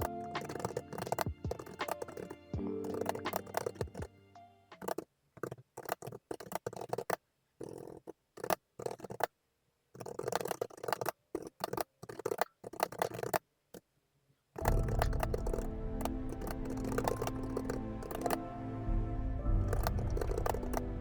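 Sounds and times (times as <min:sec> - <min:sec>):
keyboard key clicks: 0:00.0 - 0:04.1, 0:14.6 - 0:18.4, 0:19.6 - 0:20.9
background music: 0:00.0 - 0:04.9, 0:14.6 - 0:21.0.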